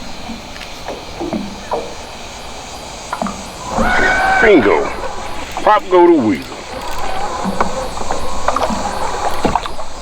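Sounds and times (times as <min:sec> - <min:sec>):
water noise: 0:00.0 - 0:10.0
sharp knocks on boat: 0:08.5 - 0:10.0.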